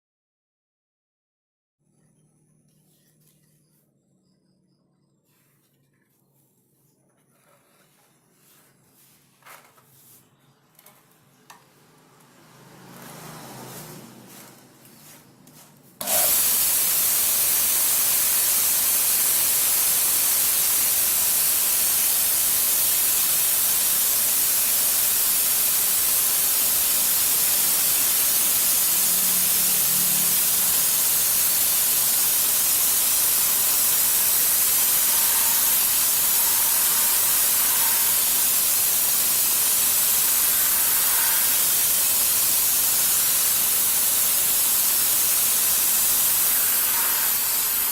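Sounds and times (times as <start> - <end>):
belt grinder hissing: 16.0 - 47.9.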